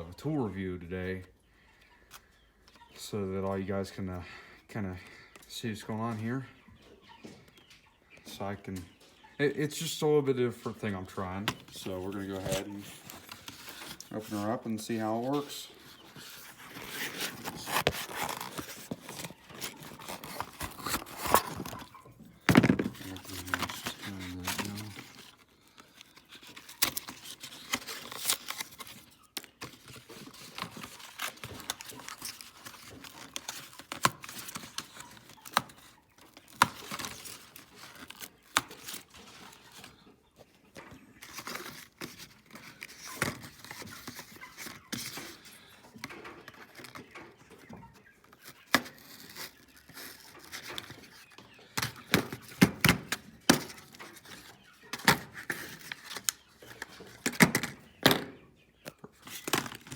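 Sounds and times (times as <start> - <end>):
scrapes and knocks: 11.4 - 25.4
packaging crinkling and tearing: 11.5 - 40.0, 41.2 - 45.5, 48.4 - 57.6.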